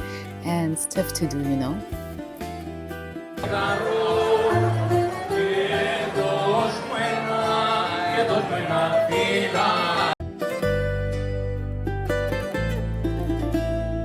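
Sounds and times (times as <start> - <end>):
plucked string music: 0.5 - 14.0
singing over instruments: 3.4 - 10.2.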